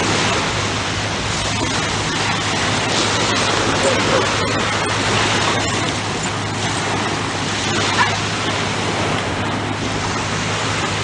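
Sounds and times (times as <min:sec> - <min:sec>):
surf rushing on a beach: 0:00.0 - 0:11.0
dog barking: 0:03.8 - 0:04.4, 0:07.8 - 0:08.2.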